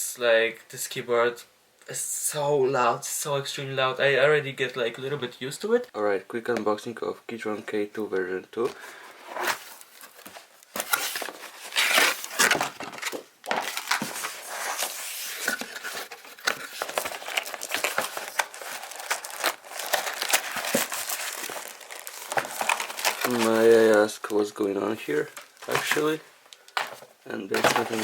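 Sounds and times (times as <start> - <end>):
packaging crinkling and rustling: 9.2 - 28.0.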